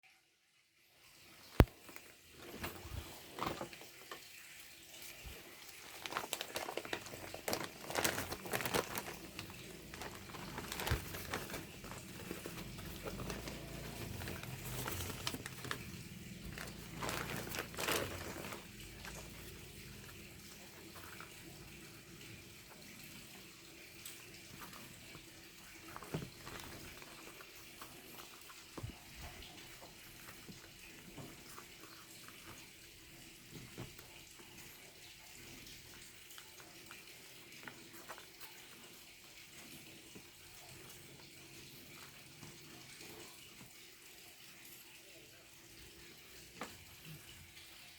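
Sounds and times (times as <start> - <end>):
packaging crinkling and rustling: 1.6 - 4.2, 5.2 - 21.4, 24.4 - 32.6.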